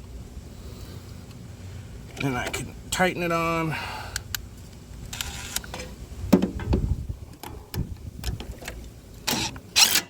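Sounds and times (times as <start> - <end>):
low handling thumps: 6.3 - 7.2.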